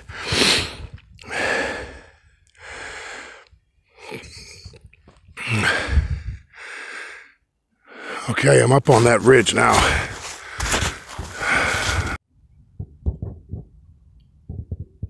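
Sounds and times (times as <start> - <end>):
man breathing hard: 0.0 - 4.3, 5.4 - 8.3, 9.7 - 12.2.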